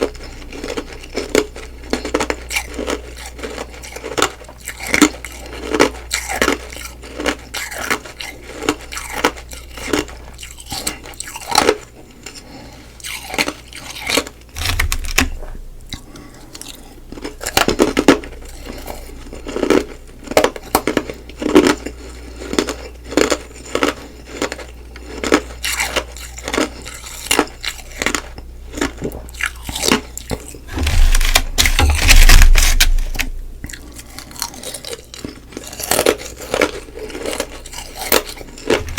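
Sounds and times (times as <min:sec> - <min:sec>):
chewing and crunching ice: 0:00.0 - 0:38.9.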